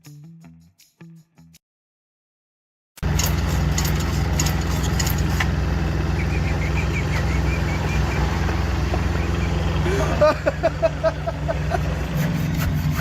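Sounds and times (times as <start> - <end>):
sharp clicks and rattles: 3.0 - 5.6
engine running steadily: 3.0 - 13.0.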